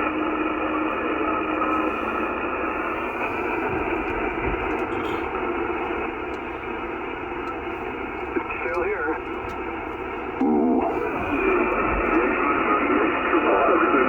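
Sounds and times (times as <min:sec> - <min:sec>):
radio static hiss: 0:07.6 - 0:14.0.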